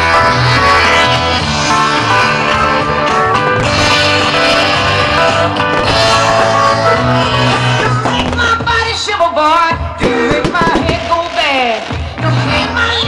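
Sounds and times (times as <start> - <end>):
instrumental rock music with guitar: 0.0 - 9.2.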